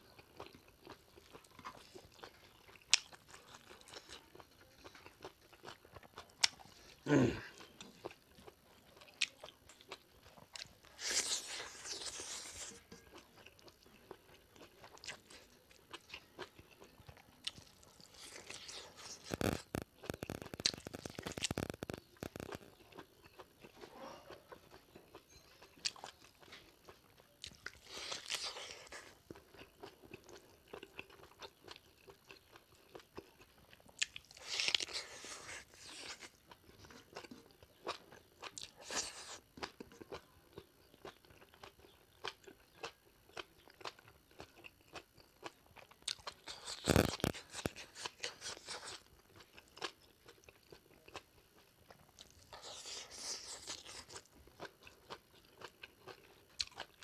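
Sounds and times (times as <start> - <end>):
person chewing wet food: 0.0 - 57.0.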